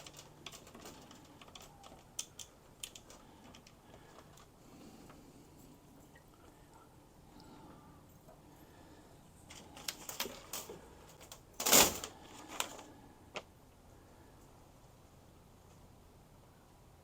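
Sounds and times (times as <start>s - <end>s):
metal chains clinking and rattling: 10.0s - 12.2s.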